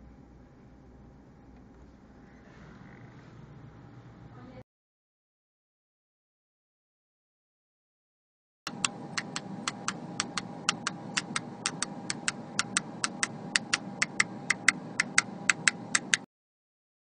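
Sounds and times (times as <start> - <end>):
faint steady hum: 0.0 - 4.6, 8.7 - 16.3
quick sharp clicks: 8.7 - 16.3.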